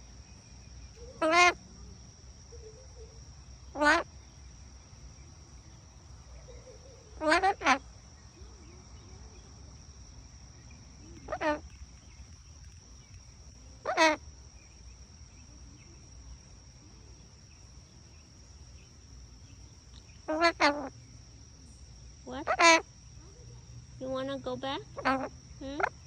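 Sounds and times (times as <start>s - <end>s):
parrot calls: 1.0s - 1.6s, 3.7s - 4.1s, 6.4s - 7.8s, 11.2s - 11.7s, 13.8s - 14.2s, 20.2s - 20.9s, 22.3s - 22.8s, 24.9s - 26.0s.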